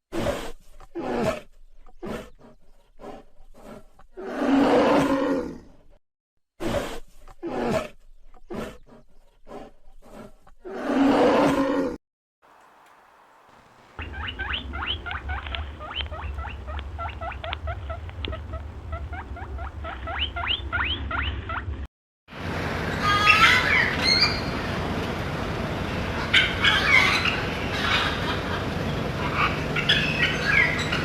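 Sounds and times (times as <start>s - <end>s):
big cat roaring: 4.2s - 5.7s
high chirps: 12.5s - 21.0s
low rumble: 12.6s - 21.8s.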